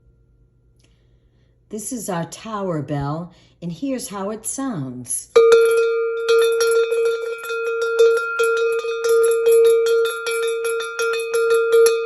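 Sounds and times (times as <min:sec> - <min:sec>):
small metal bell ringing: 0:05.4 - 0:12.0.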